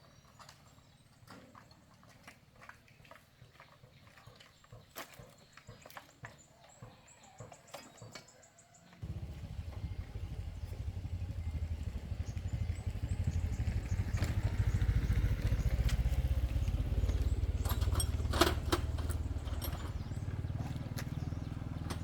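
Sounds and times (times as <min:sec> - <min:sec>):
engine starting and puttering: 0:09.0 - 0:22.0.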